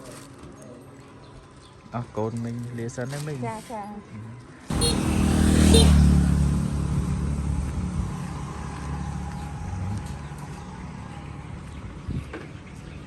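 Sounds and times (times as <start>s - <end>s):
vehicle engine revving: 4.7s - 11.6s.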